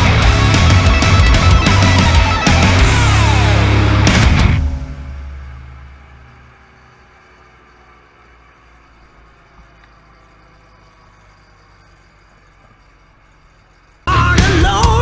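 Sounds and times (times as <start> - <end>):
rock music with singing: 0.0 - 6.1, 14.1 - 15.0
truck engine idling hum: 0.0 - 15.0.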